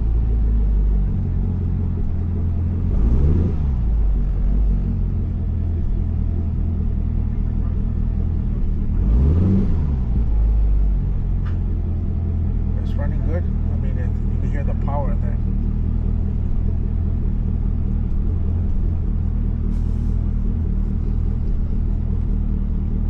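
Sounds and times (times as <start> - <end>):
car engine idling: 0.0 - 23.0
engine revving: 2.4 - 23.0.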